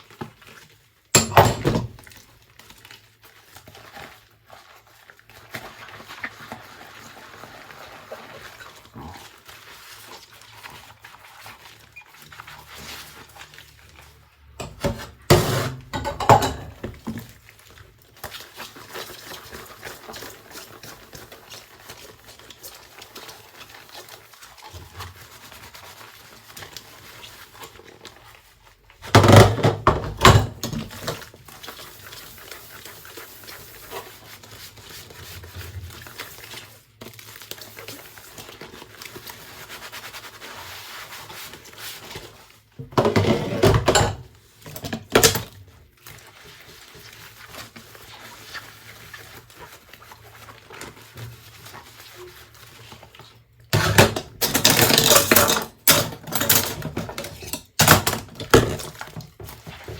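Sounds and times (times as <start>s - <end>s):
dishes being scrubbed: 1.1s - 59.9s
loud clattering of dishes: 1.2s - 1.9s, 14.6s - 17.0s, 29.2s - 30.8s, 43.0s - 45.4s, 53.8s - 58.8s.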